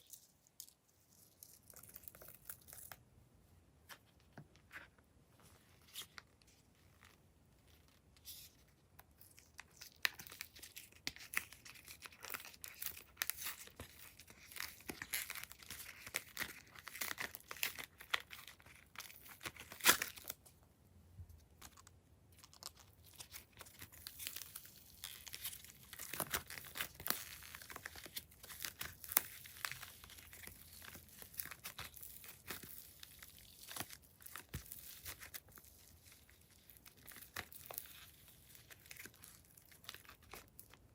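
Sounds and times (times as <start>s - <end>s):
slime squishing and crackling: 9.2s - 20.4s, 21.6s - 40.9s.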